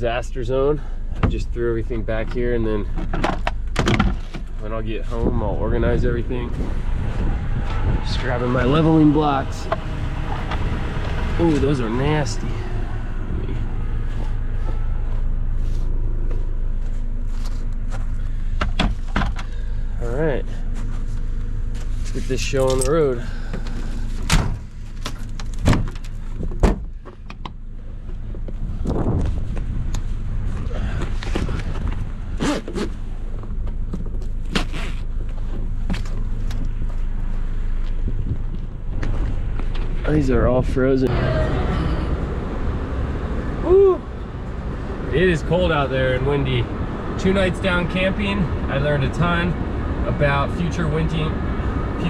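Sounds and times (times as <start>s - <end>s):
wind buffeting microphone: 5.1s - 9.0s, 28.6s - 32.3s.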